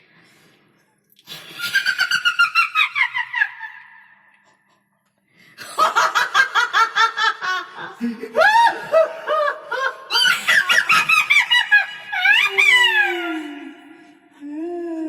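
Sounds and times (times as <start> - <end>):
witch cackling laugh: 1.3 - 4.6, 5.6 - 14.0.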